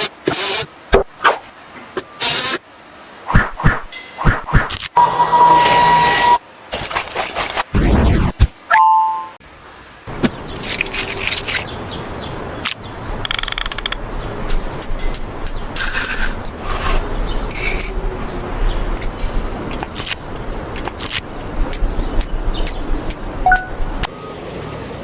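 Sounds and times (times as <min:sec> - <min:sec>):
tools clicking and clattering: 0:06.7 - 0:07.7.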